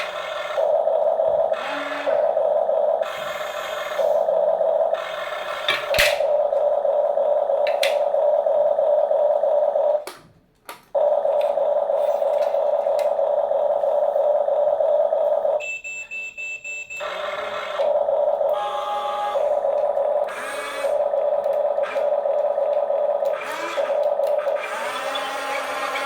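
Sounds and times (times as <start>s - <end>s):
toy motor whirring: 1.5s - 2.3s, 18.5s - 26.0s.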